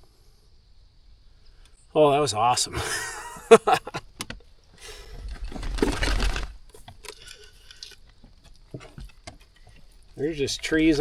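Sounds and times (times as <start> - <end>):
light handling clicks and knocks: 4.0 - 4.5
rustling: 4.3 - 11.0.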